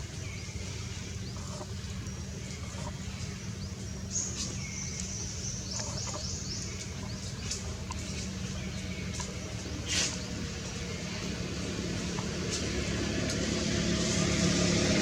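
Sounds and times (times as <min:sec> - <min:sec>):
small birds chirping: 0:00.0 - 0:14.4
steady low rumble: 0:00.0 - 0:15.0.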